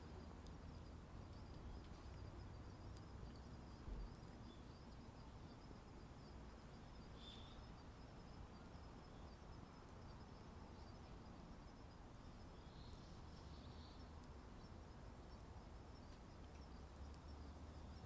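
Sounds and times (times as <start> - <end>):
bird chirp: 6.8 - 7.8.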